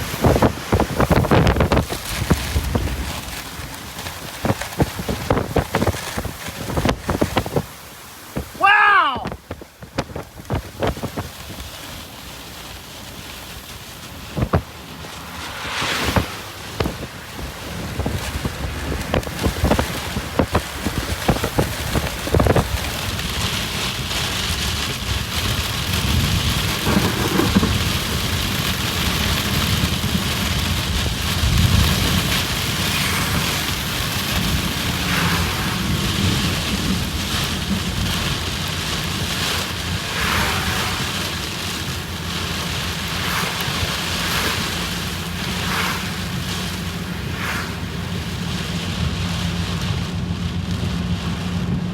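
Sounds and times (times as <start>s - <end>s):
heavy rain: 0.0s - 51.9s
wind rumbling: 0.0s - 51.9s.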